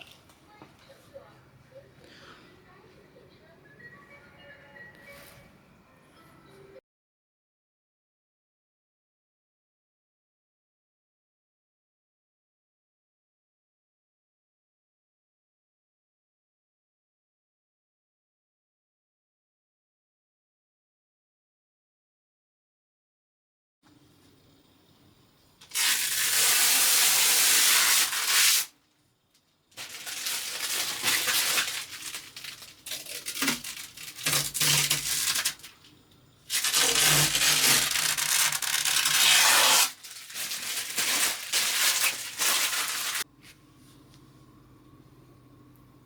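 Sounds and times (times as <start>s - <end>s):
rough rubbing noise: 36.5s - 43.2s.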